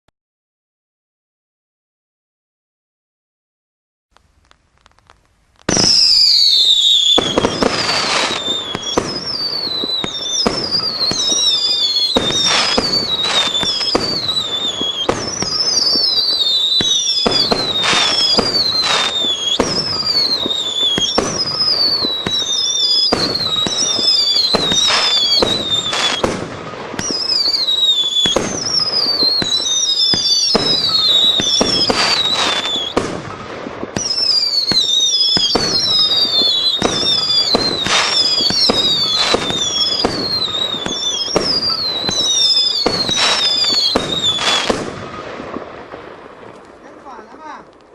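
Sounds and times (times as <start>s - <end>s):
fireworks cake firing shots: 5.6s - 47.6s
whistles falling in pitch: 5.7s - 26.3s, 27.0s - 33.0s, 34.0s - 44.8s.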